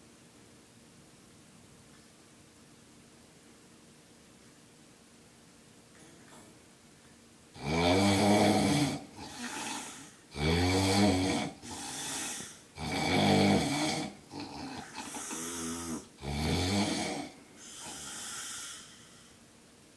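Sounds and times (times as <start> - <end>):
man snoring loudly: 7.6 - 19.0
quiet breath: 9.2 - 10.3, 11.5 - 12.7, 14.6 - 16.1, 17.2 - 19.5.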